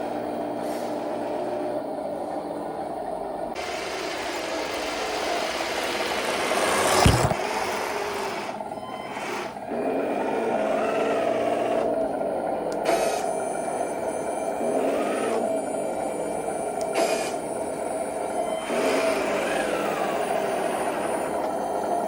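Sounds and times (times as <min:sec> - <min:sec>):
toy tank mechanical drone: 0:03.6 - 0:22.0
hiss: 0:16.9 - 0:17.4.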